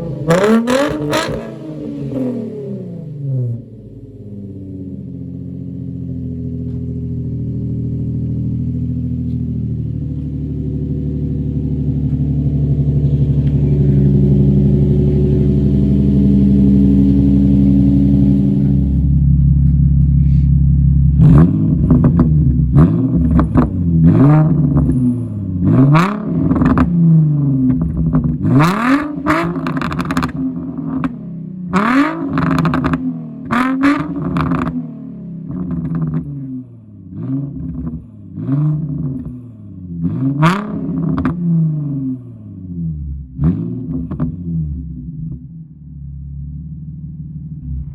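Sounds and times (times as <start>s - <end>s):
car engine revving: 0.0s - 47.9s
exhaust crackles: 11.3s - 34.8s, 47.3s - 47.9s.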